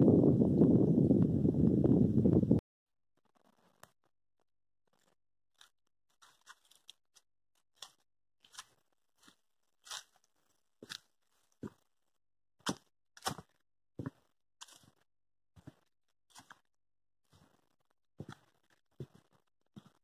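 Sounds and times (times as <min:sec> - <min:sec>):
short dry crunches: 0:04.9 - 0:11.9, 0:12.6 - 0:15.0.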